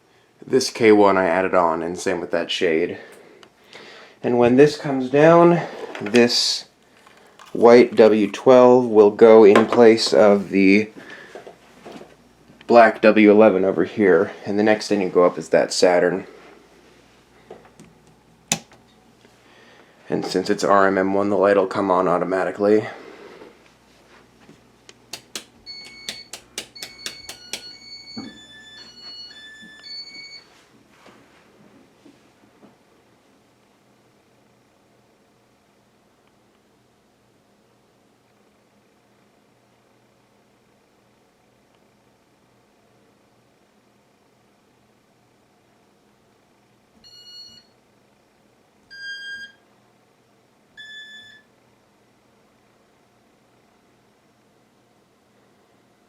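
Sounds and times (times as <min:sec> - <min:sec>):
sharp clicks: 0:25.1 - 0:27.7
short electronic beeps: 0:25.7 - 0:28.8.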